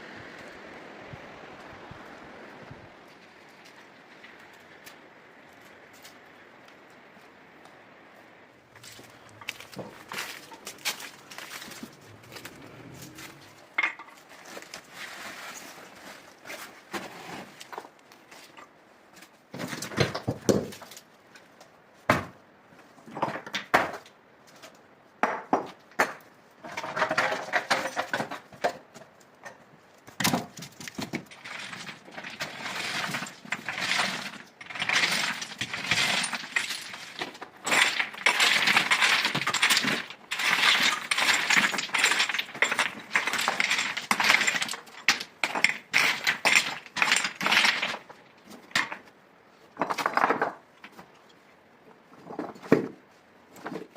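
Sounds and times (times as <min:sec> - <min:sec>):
hard objects clinking and scraping: 0:08.8 - 0:18.7, 0:30.1 - 0:49.0.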